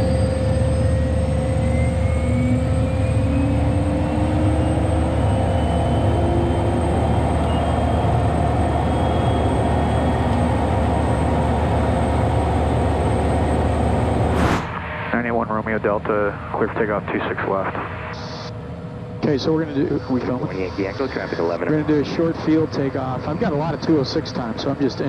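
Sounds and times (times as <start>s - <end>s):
faint rising high tones: 0.0s - 15.2s
turbine engine running: 0.0s - 16.8s, 17.6s - 25.0s.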